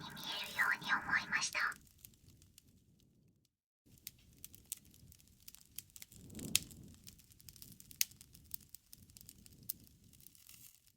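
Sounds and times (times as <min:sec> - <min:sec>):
wood fire crackling: 0:00.0 - 0:03.1, 0:03.9 - 0:10.9
low rumble of flames: 0:00.0 - 0:10.9
sharp fire pops: 0:03.9 - 0:10.9.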